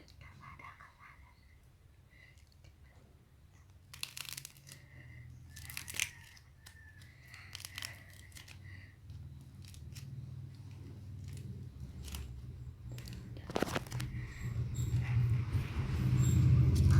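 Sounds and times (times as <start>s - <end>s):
low steady hum: 0.0s - 16.9s
dried clay cracking and crumbling: 3.5s - 15.2s.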